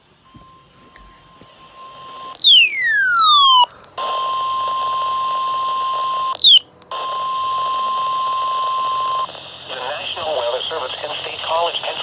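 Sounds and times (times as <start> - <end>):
falling electronic sweep: 2.4 - 3.7
steady high beep tone: 2.4 - 3.7, 6.4 - 6.6.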